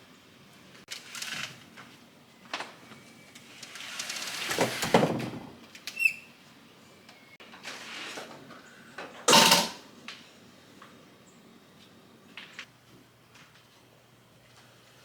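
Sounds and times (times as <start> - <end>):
kitchen knocks and clicks: 9.3 - 9.8.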